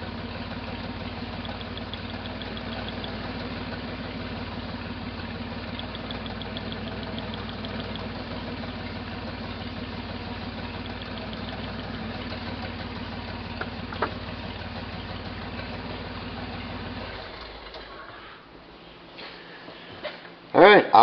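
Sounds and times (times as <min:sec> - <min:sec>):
car engine idling with misfire: 0:00.0 - 0:18.8.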